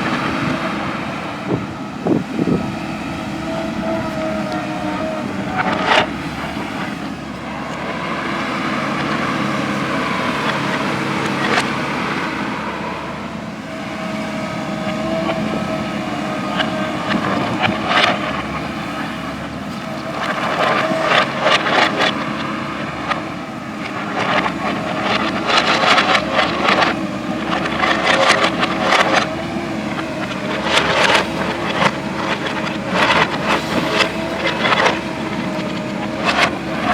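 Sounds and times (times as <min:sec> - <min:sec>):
diesel engine running under load: 0:00.0 - 0:36.9
sharp knocks and scrapes: 0:14.1 - 0:36.9.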